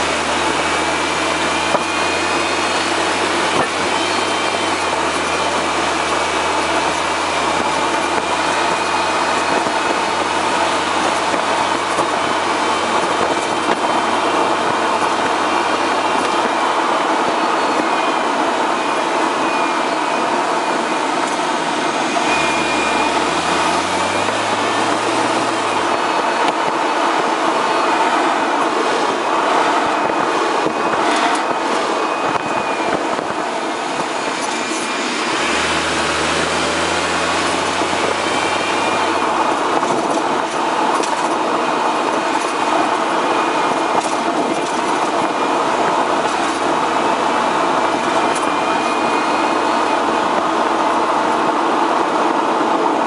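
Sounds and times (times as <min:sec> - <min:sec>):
tyre and road noise: 0:00.0 - 0:53.0
low hum rising in pitch: 0:20.5 - 0:26.4.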